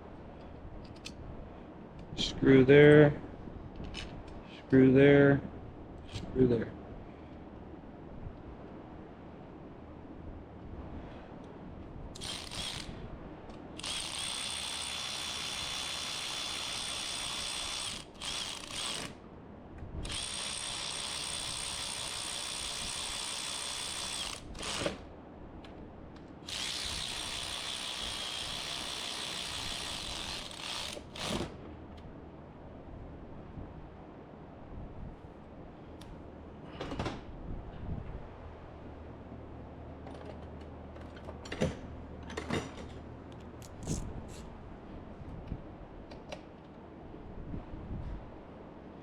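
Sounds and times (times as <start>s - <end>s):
power driver whining: 20.0s - 25.0s, 26.4s - 31.6s.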